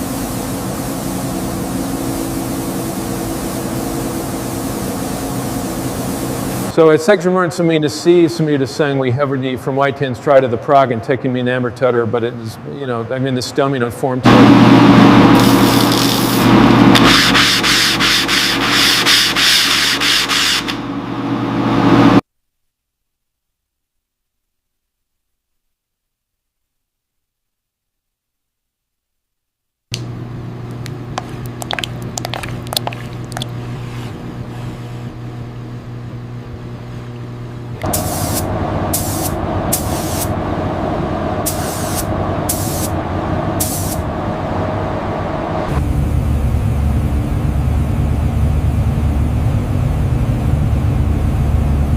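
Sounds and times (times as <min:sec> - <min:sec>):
compressed air spray hissing: 0:00.0 - 0:06.7, 0:15.4 - 0:20.8, 0:37.8 - 0:40.3, 0:41.5 - 0:43.0, 0:43.6 - 0:44.0
mechanical hum: 0:00.0 - 0:22.2, 0:29.9 - 0:51.9
sanding strokes: 0:17.0 - 0:20.8
steady low hum: 0:30.0 - 0:51.9.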